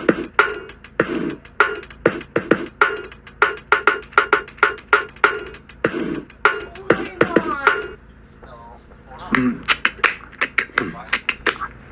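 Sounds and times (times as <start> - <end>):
person beatboxing: 5.2 - 8.0, 9.2 - 11.9.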